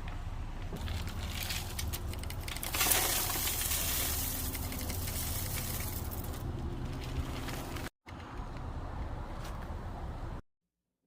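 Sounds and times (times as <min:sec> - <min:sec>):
bird seed pouring into feeder: 0:01.3 - 0:06.4.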